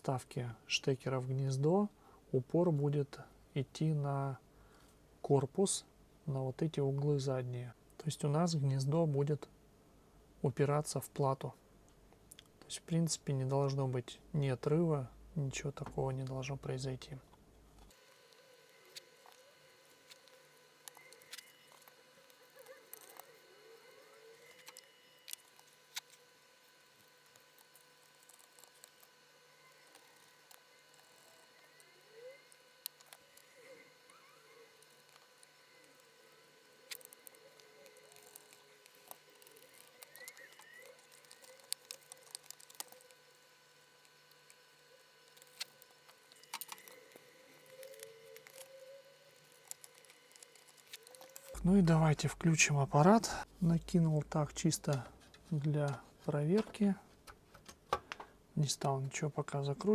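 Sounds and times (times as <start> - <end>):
faint steady hum: 0.0 - 59.9.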